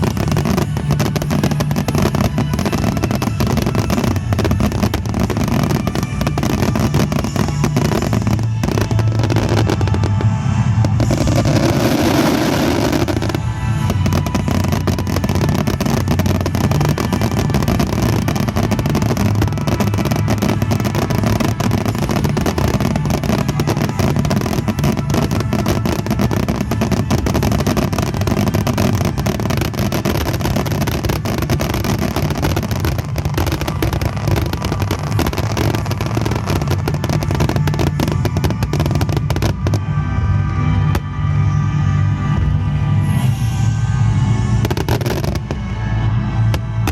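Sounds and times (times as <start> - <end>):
fireworks bursts and crackling: 0.0 - 46.9
music playing: 0.0 - 46.9.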